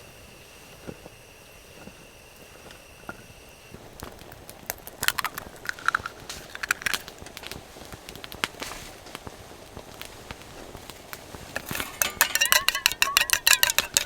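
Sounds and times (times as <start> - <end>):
clicks and light knocks: 11.6 - 14.0
short ringing clinks: 11.6 - 14.0.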